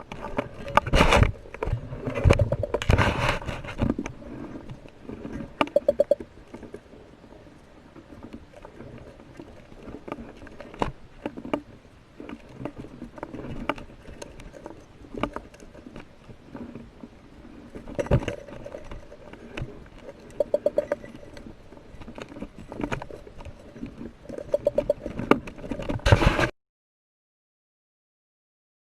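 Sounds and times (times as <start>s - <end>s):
underwater clicks and knocks: 0.0s - 4.1s, 4.7s - 6.7s, 9.4s - 16.1s, 17.8s - 26.4s.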